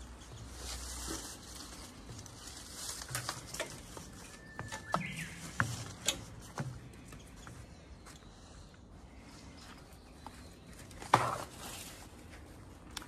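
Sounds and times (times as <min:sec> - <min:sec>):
sharp footsteps: 0:00.0 - 0:08.4
bird whistling song: 0:04.2 - 0:06.0.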